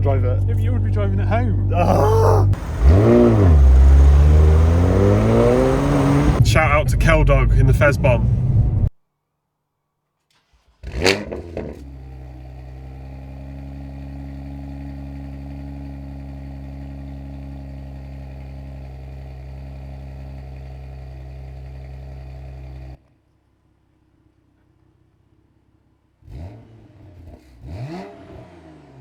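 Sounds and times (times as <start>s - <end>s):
car engine starting and idling: 2.6s - 7.2s.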